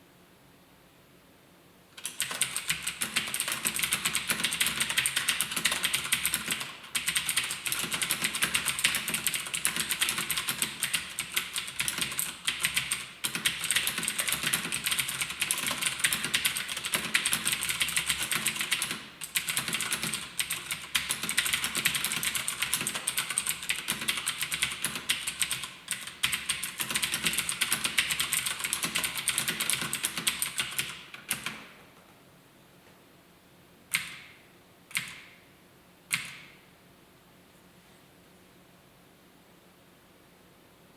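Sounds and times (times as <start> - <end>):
mechanical keyboard typing: 2.0 - 31.7, 33.9 - 34.3, 34.9 - 35.3.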